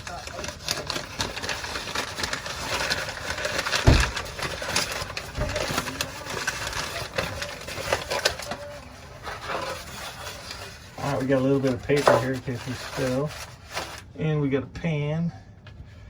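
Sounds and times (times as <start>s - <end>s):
heavy thump: 3.8s - 4.3s.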